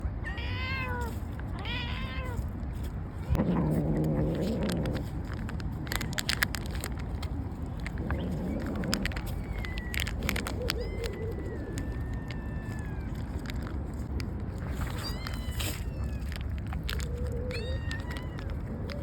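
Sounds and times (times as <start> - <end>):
cat yowling: 0.2 - 2.5, 7.8 - 13.7, 14.8 - 19.0
cat meowing: 0.2 - 2.6, 7.8 - 13.6, 14.7 - 19.0
small sharp clicks and crackles: 0.9 - 19.0.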